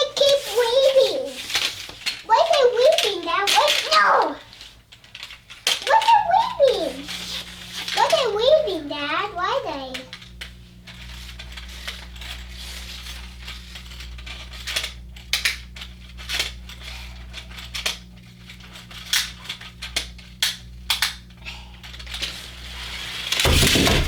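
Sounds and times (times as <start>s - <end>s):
metal toy cars clattering: 0.0s - 4.4s
steady low hum: 0.0s - 24.0s.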